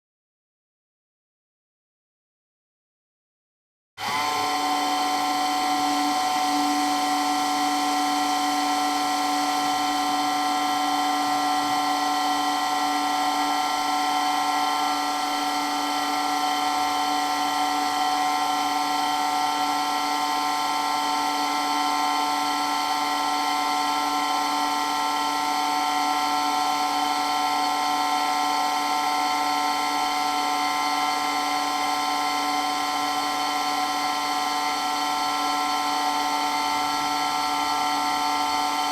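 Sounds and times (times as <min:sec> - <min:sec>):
electric water pump whining: 0:04.0 - 0:38.9.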